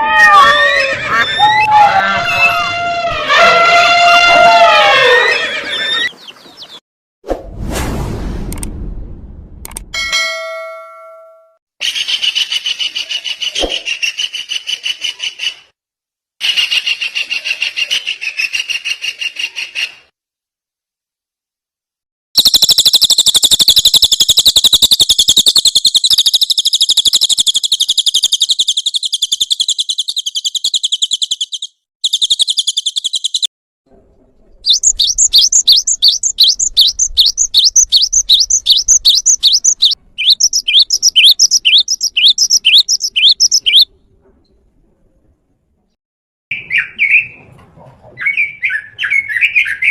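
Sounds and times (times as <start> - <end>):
bird trill: 22.4 - 33.5, 34.6 - 43.9, 48.2 - 49.9
sharp down-slurred bird chirps: 22.4 - 33.5, 34.6 - 43.9, 48.2 - 49.9.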